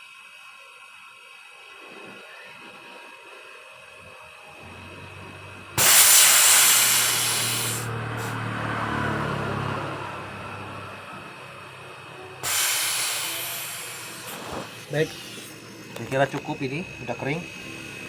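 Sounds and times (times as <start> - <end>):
compressed gas hissing: 5.8 - 8.4, 12.4 - 18.0.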